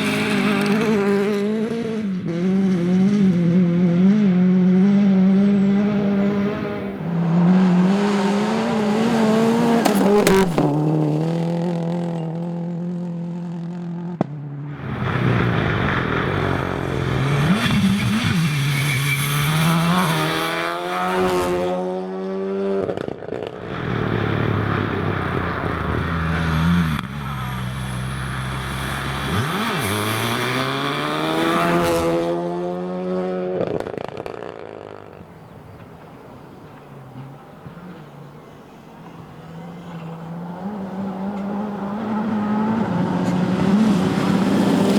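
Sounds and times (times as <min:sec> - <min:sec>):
rally car engine at full throttle: 0:00.0 - 0:44.9.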